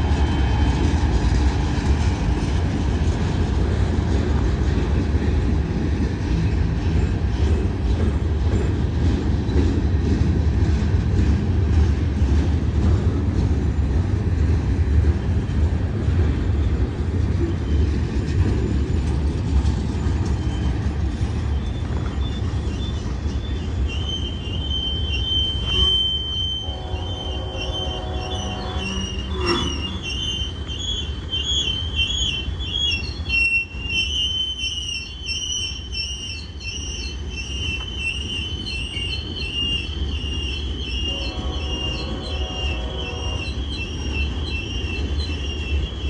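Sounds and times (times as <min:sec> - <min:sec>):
freight train rumbling past: 0:00.0 - 0:46.0
train brakes squealing: 0:15.1 - 0:46.0.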